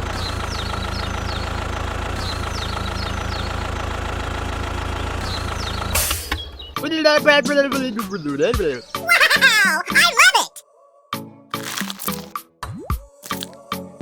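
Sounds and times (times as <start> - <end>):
engine idling: 0.0 - 6.0.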